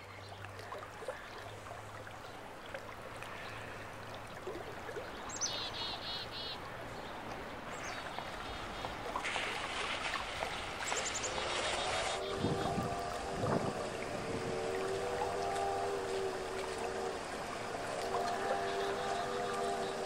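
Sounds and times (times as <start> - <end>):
bird calls: 5.3 - 6.6
steady hiss: 8.5 - 20.0
low hum: 8.9 - 20.0.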